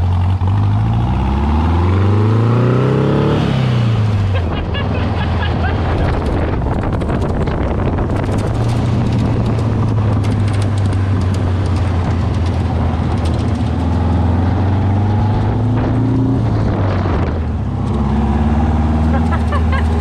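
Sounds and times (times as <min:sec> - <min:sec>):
dune buggy engine running: 0:00.0 - 0:20.0
wind noise: 0:03.4 - 0:20.0.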